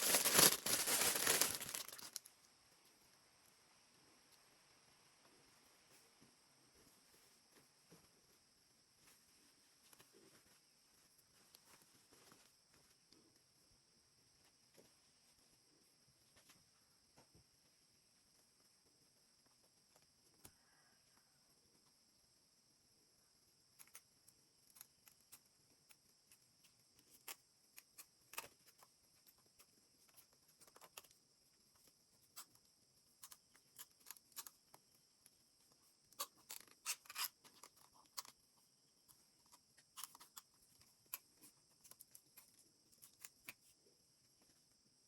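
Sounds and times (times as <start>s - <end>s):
small objects clicking and rustling: 0.0s - 2.3s.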